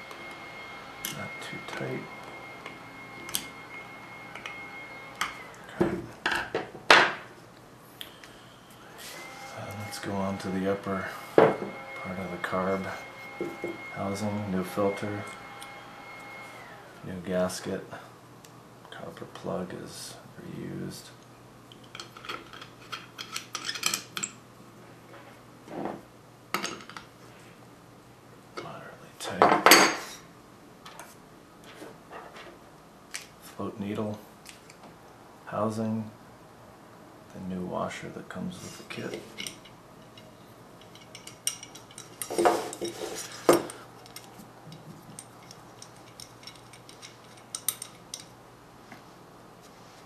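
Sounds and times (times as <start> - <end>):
small metal parts clinking: 21.8 - 24.4, 39.2 - 48.4.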